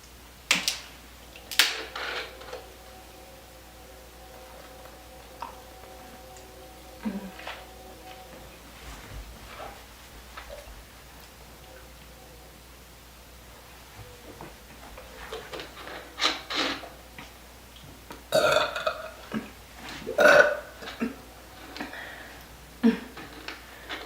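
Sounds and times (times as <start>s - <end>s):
girl burping: 18.3s - 19.4s, 20.1s - 21.2s.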